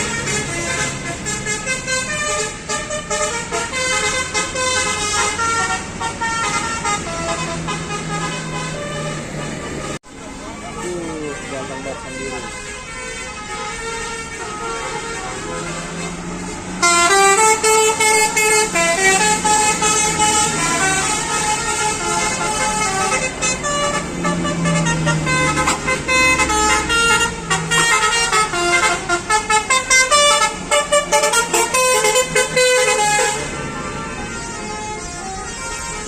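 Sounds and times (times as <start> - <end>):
low bus engine hum: 0.0 - 36.0
multi-tone bus horn playing a tune: 0.0 - 36.0.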